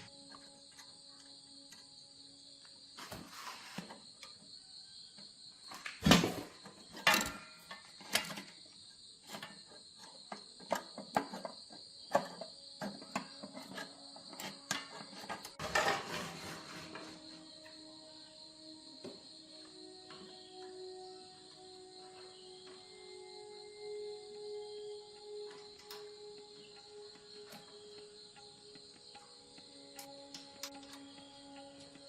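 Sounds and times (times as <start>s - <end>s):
crickets chirping: 0.0s - 32.0s
clicks and knocks of parts: 5.7s - 17.0s, 25.1s - 32.0s.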